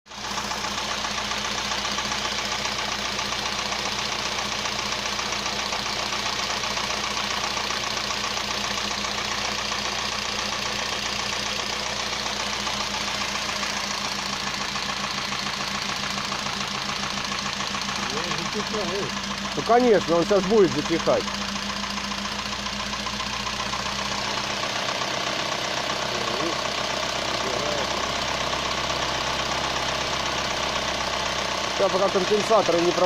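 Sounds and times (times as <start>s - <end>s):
car engine idling: 0.1s - 33.0s
rapid engine knocking: 0.1s - 33.0s.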